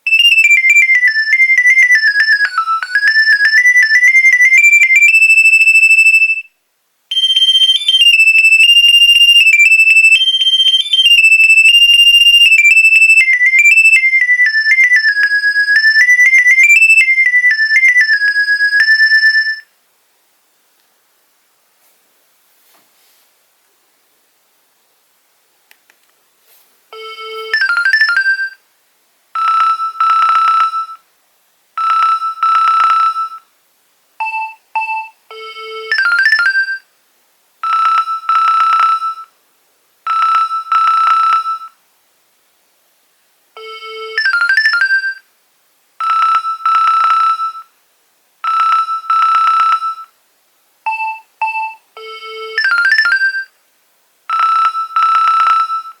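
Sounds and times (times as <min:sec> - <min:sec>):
mobile phone ringtone melody: 0:00.1 - 0:06.5, 0:07.1 - 0:19.7, 0:27.0 - 0:28.6, 0:29.4 - 0:31.0, 0:31.8 - 0:33.4, 0:34.2 - 0:36.9, 0:37.6 - 0:39.3, 0:40.1 - 0:41.8, 0:43.6 - 0:45.2, 0:46.0 - 0:47.7, 0:48.4 - 0:50.1, 0:50.9 - 0:53.6, 0:54.3 - 0:56.0.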